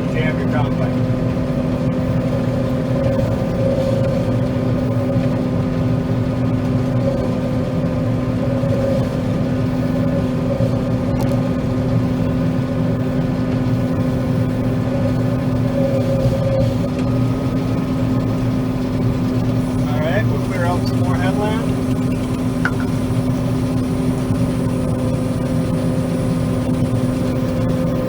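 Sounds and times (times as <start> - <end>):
combine harvester engine drone: 0.0 - 28.0
constant machine whine: 0.0 - 28.0.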